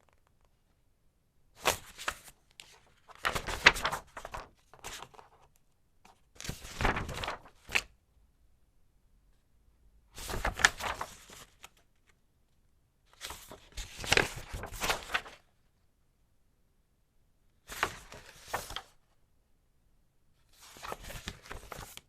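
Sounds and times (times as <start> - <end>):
paper pages rustling: 0.0 - 0.6, 1.6 - 7.9, 10.2 - 12.2, 13.1 - 15.5, 17.7 - 19.0, 20.5 - 22.0.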